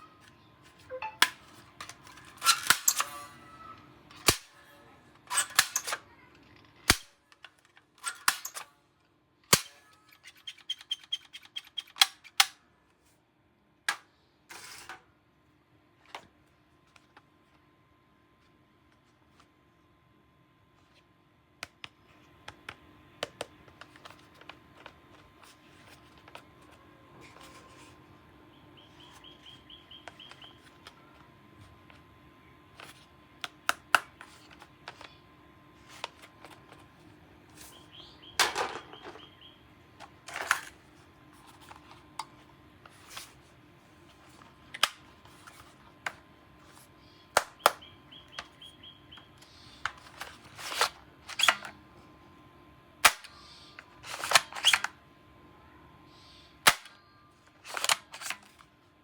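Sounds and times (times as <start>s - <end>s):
plastic toy gun clicks and snaps: 1.2s - 3.1s, 4.1s - 4.6s, 6.9s - 8.7s, 9.5s - 9.8s, 10.5s - 12.6s, 47.4s - 47.8s, 53.0s - 53.4s, 56.7s - 57.0s, 57.7s - 58.4s.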